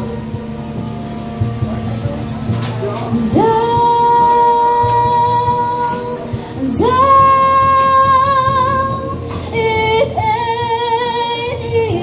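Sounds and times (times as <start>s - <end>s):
soft backing music: 0.0s - 12.0s
woman singing: 3.0s - 12.0s.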